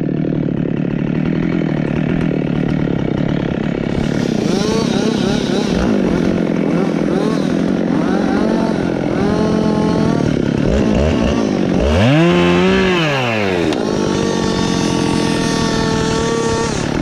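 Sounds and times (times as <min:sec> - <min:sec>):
chainsaw engine revving: 0:00.0 - 0:17.0.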